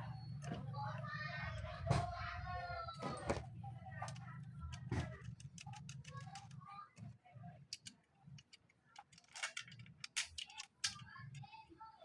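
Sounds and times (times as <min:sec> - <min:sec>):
chainsaw parts clicking and clinking: 0:07.7 - 0:11.0.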